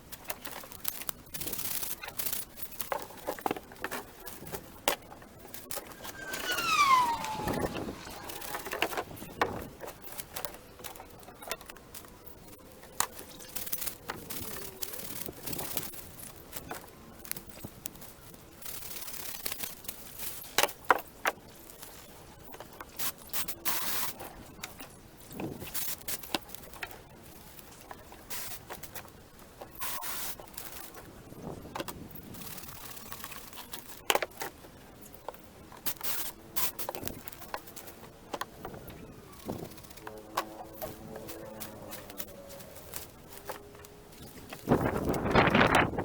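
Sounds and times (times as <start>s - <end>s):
branches and twigs handled: 0.1s - 4.7s, 39.3s - 45.8s
scraping and crackling: 5.5s - 9.4s.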